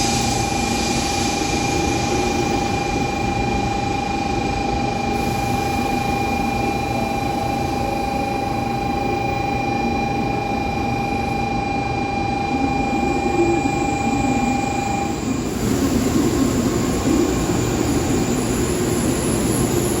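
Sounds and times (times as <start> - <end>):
rushing sound with high whine: 0.0 - 8.7, 11.1 - 20.0
train rumbling past platform: 12.5 - 20.0.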